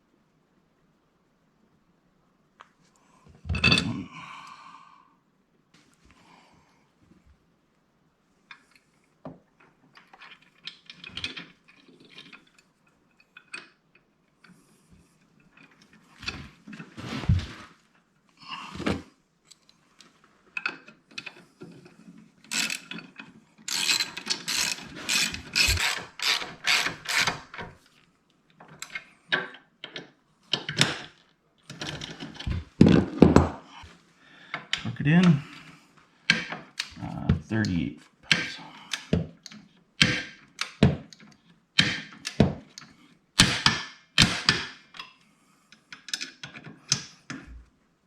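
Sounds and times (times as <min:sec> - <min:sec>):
socket ratchet clicking: 0:23.7 - 0:27.4
tools knocking: 0:23.7 - 0:27.4.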